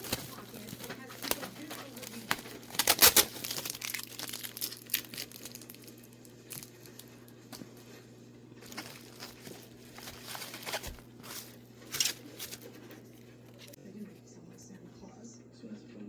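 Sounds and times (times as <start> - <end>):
packaging tearing and crinkling: 0.0 - 7.4, 8.6 - 13.8.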